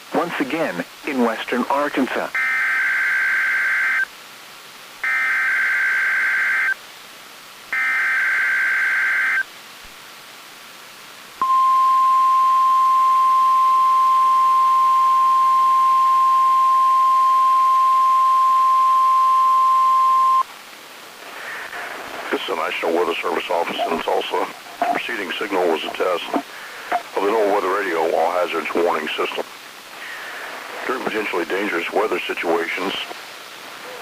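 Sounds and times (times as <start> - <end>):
steady high warning tone: 11.4 - 20.5, 22.9 - 27.1.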